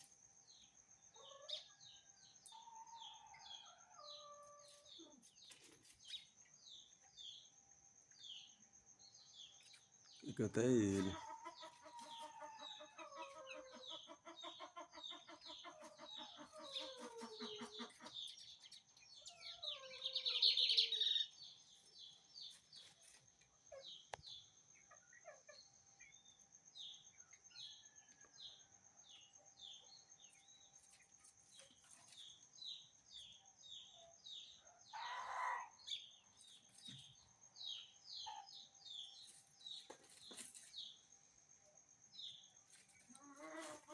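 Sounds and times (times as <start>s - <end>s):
chickens calling: 10.2s - 21.9s, 33.9s - 37.2s, 42.7s - 43.9s.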